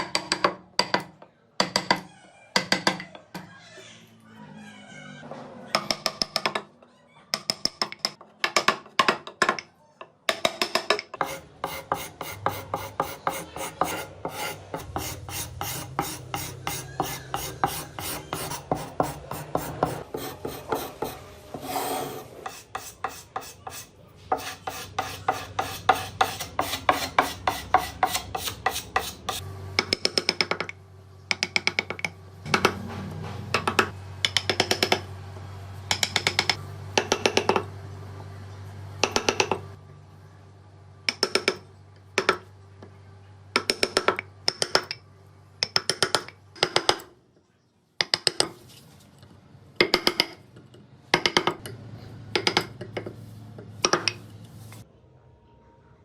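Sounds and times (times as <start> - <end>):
abrasive tool scraping wood: 11.2 - 29.4.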